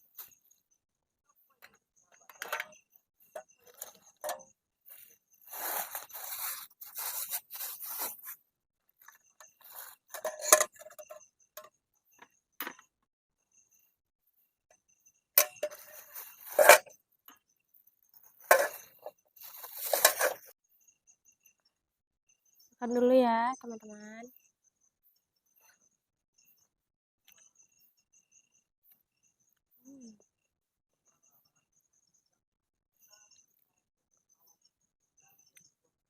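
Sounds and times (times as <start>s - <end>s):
gear scraping and rustling: 3.3s - 8.4s, 15.4s - 16.9s, 18.5s - 20.5s.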